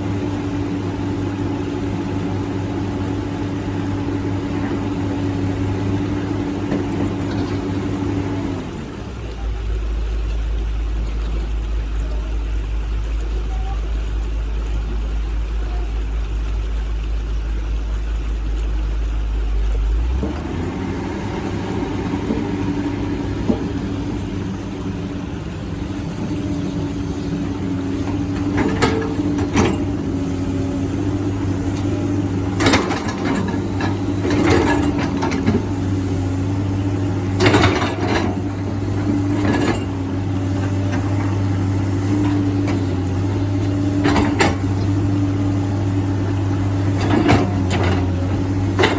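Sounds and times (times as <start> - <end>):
excavator engine whining: 0.0 - 9.8, 19.5 - 48.9
digging knocks and clanks: 21.5 - 48.9.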